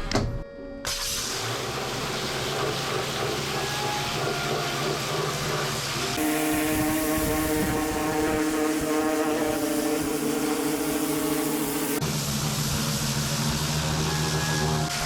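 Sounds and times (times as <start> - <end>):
machine hum: 3.0 - 12.5.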